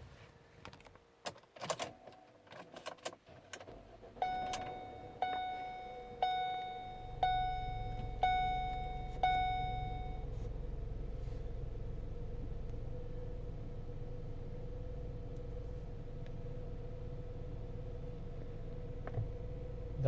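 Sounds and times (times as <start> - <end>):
low steady hum: 3.6 - 20.0
car warning chime dinging: 4.2 - 10.3.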